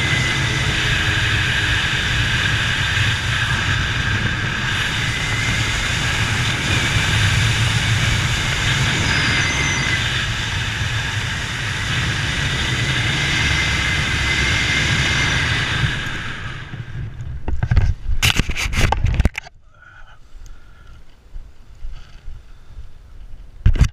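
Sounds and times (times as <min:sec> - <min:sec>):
faint high whine: 0:00.0 - 0:17.5
vehicle rumble: 0:00.0 - 0:19.6.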